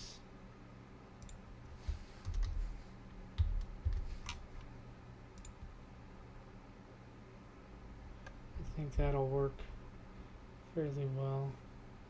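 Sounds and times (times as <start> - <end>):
soft low thumps: 3.4 - 4.2, 8.6 - 9.8.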